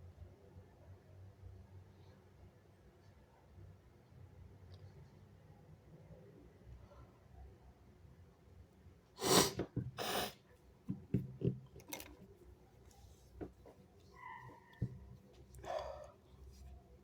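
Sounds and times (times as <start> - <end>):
person sneezing: 9.2 - 10.4.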